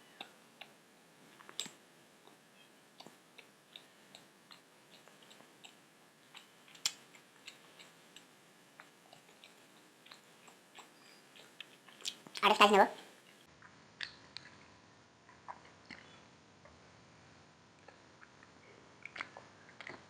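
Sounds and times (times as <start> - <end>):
chewing with wet mouth clicks: 3.0 - 12.5, 13.2 - 14.6, 15.5 - 16.2, 19.0 - 20.0.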